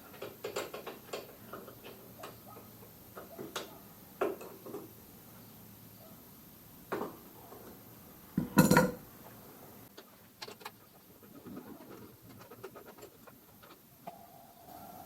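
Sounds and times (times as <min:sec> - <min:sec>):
metal tool clanking on metal: 0:08.4 - 0:09.0
tools clicking and tapping: 0:08.4 - 0:09.0.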